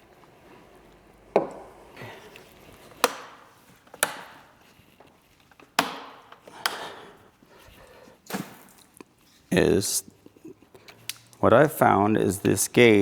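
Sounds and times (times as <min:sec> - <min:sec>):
hard parts knocking and clicking: 0:00.2 - 0:04.7, 0:05.5 - 0:07.0.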